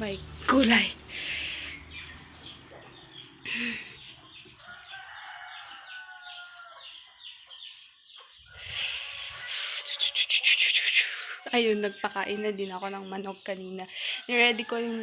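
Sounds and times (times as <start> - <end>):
chickens clucking: 1.1 - 15.0
rooster crowing: 4.6 - 7.0, 8.5 - 10.4.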